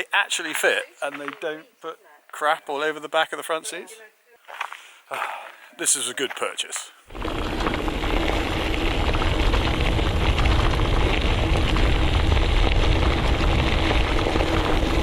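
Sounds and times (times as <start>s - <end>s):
vehicle engine rumble: 7.1s - 15.0s.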